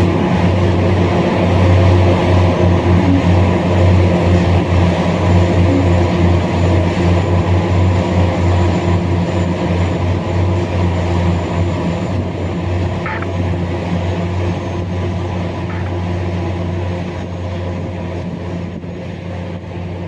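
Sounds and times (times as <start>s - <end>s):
large diesel engine humming: 0.0s - 20.0s
short high-pitched sound: 13.1s - 13.4s, 15.7s - 16.2s.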